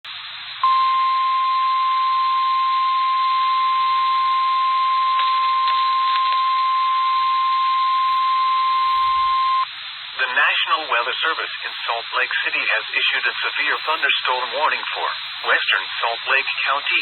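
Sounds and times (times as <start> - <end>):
steady alarm beep: 0.6 - 9.7
radio static: 7.4 - 9.6, 10.2 - 17.0.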